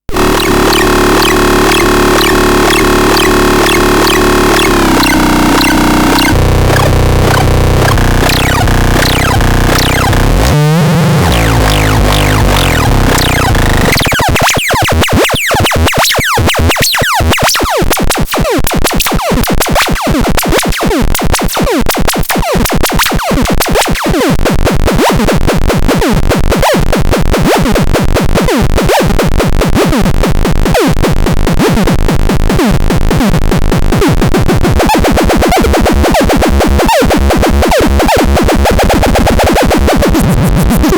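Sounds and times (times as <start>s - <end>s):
steady synth bass: 0.0s - 17.9s, 31.8s - 40.9s
short falling electronic chirps: 0.1s - 10.5s, 11.2s - 17.8s
synthesized drones with falling sweep: 0.1s - 15.0s.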